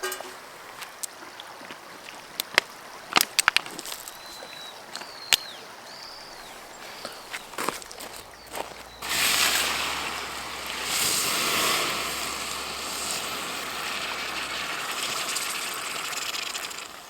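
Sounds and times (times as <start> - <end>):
running water rushing: 9.0 - 17.0.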